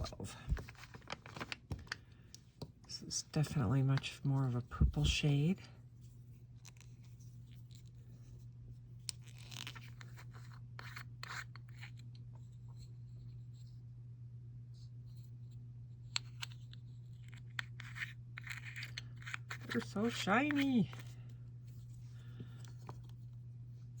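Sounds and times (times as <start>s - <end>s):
plastic jars rubbing and clicking: 0.0s - 2.1s, 9.1s - 12.1s, 16.2s - 21.2s
steady low hum: 0.0s - 24.0s.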